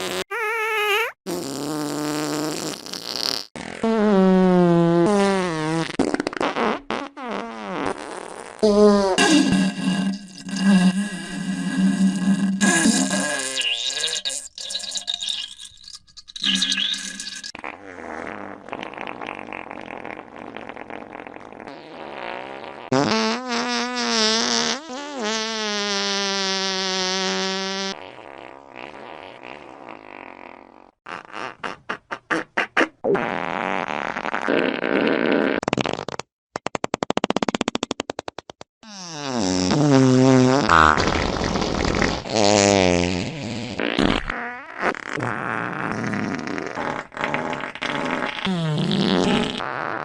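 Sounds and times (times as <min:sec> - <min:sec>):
farts: 0:00.0 - 0:14.6, 0:16.4 - 0:50.0.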